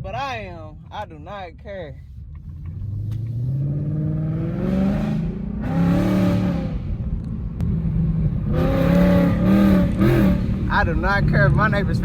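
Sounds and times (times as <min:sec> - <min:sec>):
car engine accelerating hard: 0:02.5 - 0:12.0.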